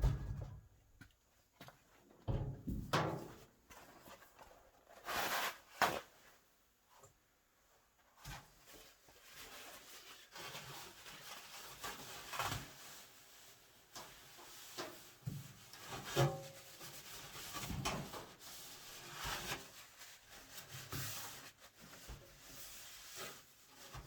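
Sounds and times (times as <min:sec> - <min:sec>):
knock on metal cabinet: 0:00.0 - 0:00.6.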